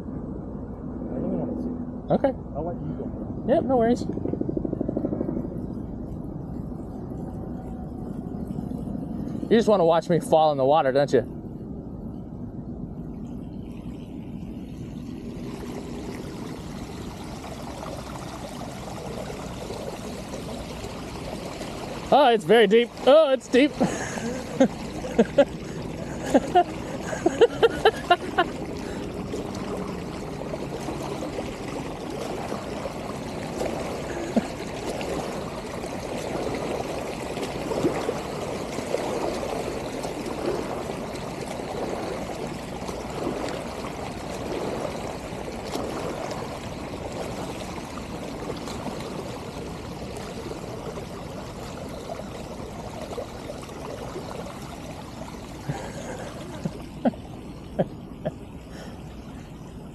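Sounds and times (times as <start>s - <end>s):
floodwater running and gurgling: 13.0s - 59.9s.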